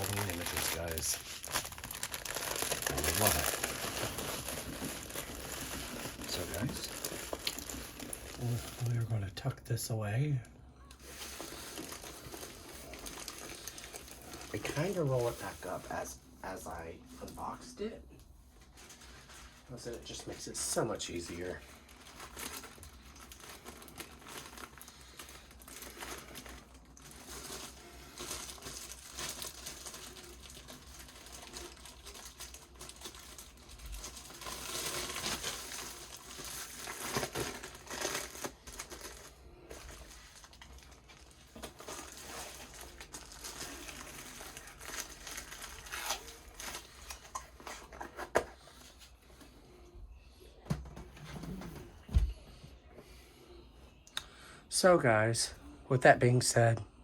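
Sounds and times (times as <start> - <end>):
plastic packaging crinkling: 0.0 - 9.2, 10.0 - 17.9, 18.6 - 49.2.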